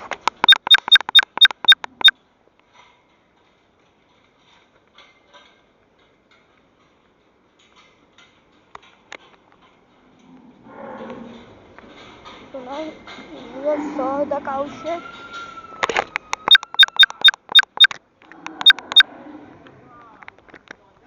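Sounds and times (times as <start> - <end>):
sharp ringing ticks: 0.4 - 2.1, 16.5 - 17.9, 18.5 - 19.0.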